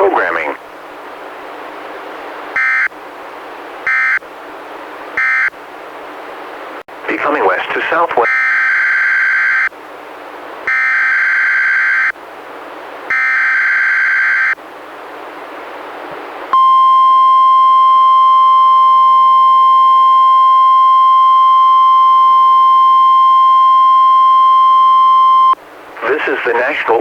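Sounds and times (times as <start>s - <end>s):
radio hiss: 0.0s - 0.6s, 7.0s - 8.3s, 25.9s - 27.0s
steady warning alarm tone: 2.6s - 2.9s, 3.8s - 4.2s, 5.2s - 5.5s, 8.2s - 9.7s, 10.7s - 12.2s, 13.1s - 14.6s, 16.5s - 25.6s.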